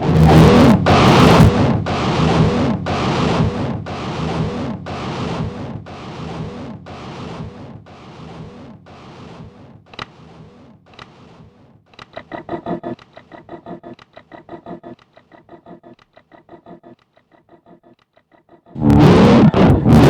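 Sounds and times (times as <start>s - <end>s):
pulsing processed whooshing: 12.2s - 17.9s.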